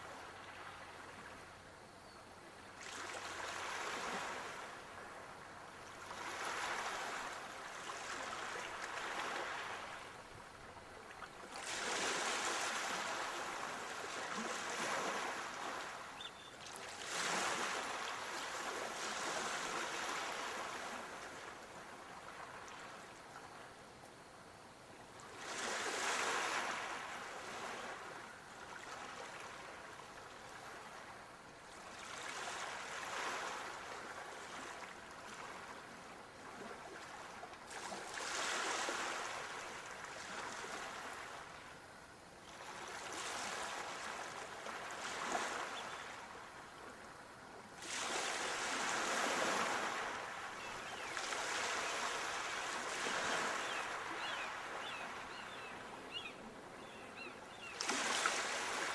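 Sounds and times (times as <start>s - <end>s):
sea waves washing in: 11.5s - 22.6s, 47.8s - 58.9s.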